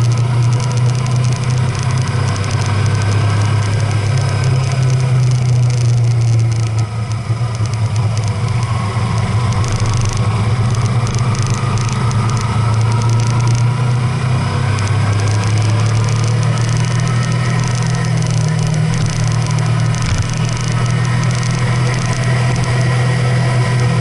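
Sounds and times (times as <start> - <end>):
car engine droning: 0.0 - 24.0
road noise: 0.0 - 24.0.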